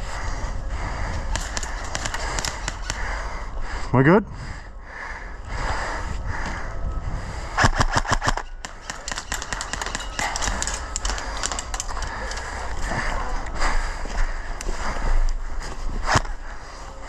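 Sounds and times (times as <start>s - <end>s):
airsoft guns firing: 1.3s - 3.2s, 7.6s - 12.4s.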